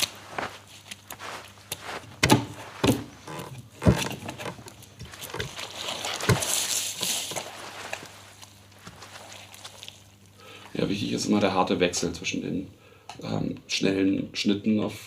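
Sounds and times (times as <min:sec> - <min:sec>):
squelching thuds: 0:00.0 - 0:10.2.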